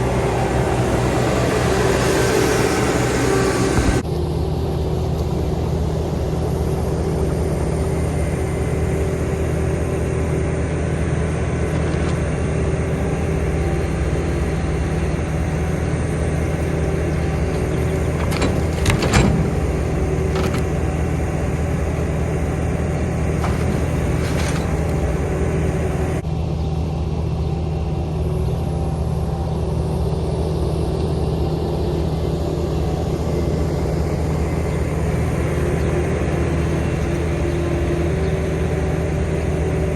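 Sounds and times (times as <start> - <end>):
vehicle engine droning: 0.0 - 39.9
short knocks or rattles: 17.6 - 21.2.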